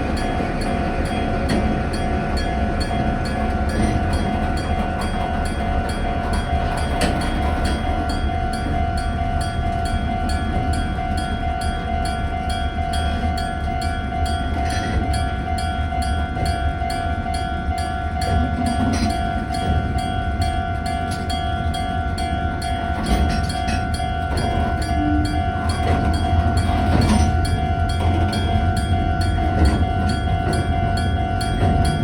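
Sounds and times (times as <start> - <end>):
crossing warning bell ringing: 0.0 - 32.0
diesel locomotive drone: 0.0 - 32.0.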